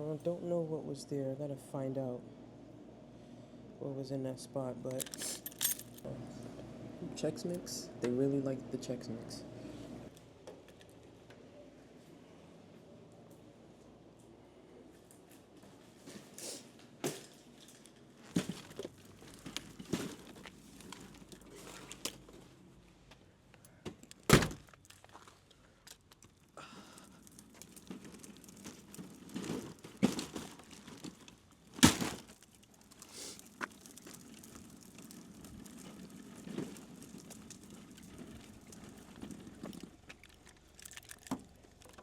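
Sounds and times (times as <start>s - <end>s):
snack bags crinkling: 17.3s - 22.3s, 23.5s - 42.0s.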